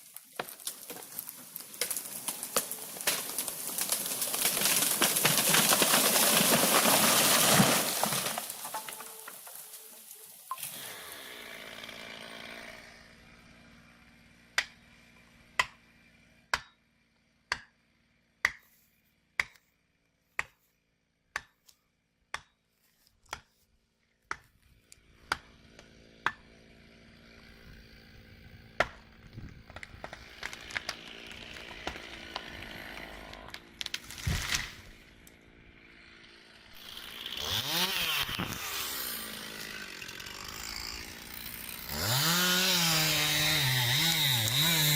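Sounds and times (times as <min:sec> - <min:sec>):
chainsaw revving: 0:10.5 - 0:14.4, 0:25.0 - 0:44.9.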